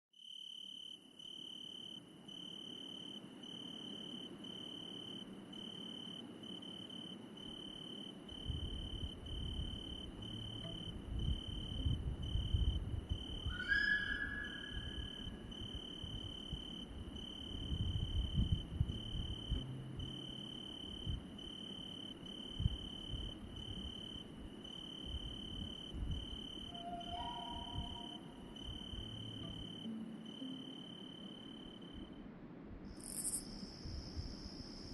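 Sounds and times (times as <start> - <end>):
crickets trilling: 0.2 - 34.9
high animal call: 26.7 - 28.3.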